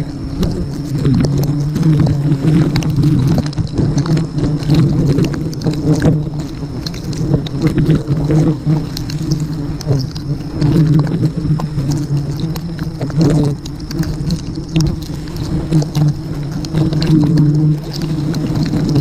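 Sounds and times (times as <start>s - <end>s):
bees buzzing: 0.0s - 19.0s.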